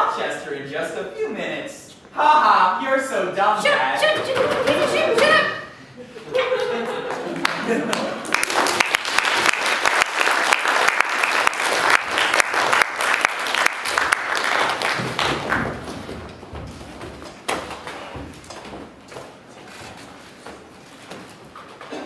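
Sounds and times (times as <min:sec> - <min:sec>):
audience applauding: 0:06.5 - 0:15.9.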